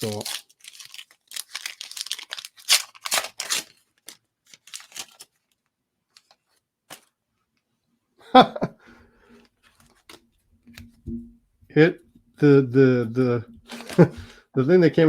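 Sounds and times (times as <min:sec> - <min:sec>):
wrapper tearing and crinkling: 0:00.0 - 0:07.1.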